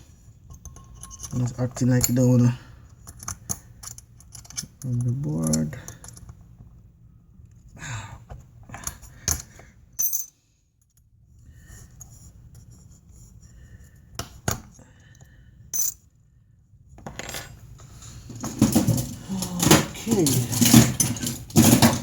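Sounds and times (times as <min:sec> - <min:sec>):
small metal parts clinking: 0:00.5 - 0:02.4, 0:03.0 - 0:06.3, 0:08.8 - 0:10.4, 0:15.7 - 0:16.1, 0:18.3 - 0:22.0.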